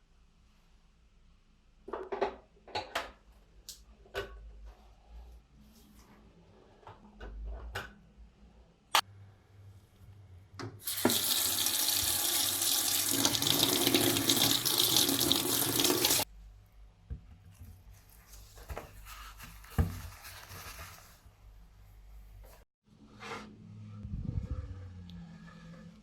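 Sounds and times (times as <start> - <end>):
tap water running into sink: 10.8 - 16.2.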